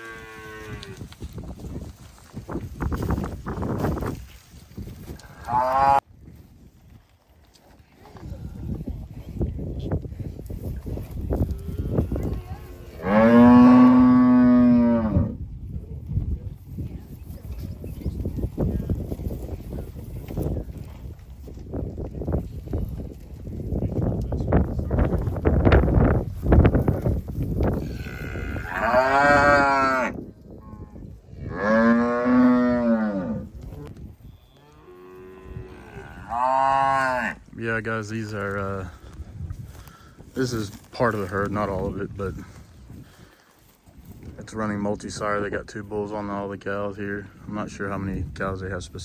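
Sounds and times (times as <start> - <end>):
cow mooing: 27.8 - 30.2, 31.5 - 33.5.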